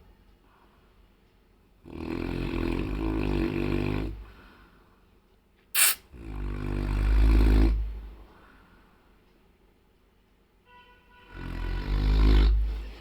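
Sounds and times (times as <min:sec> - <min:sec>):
dog snoring: 0:01.8 - 0:04.4, 0:06.2 - 0:08.1, 0:11.3 - 0:13.0
sharp burst of breath: 0:05.8 - 0:06.0.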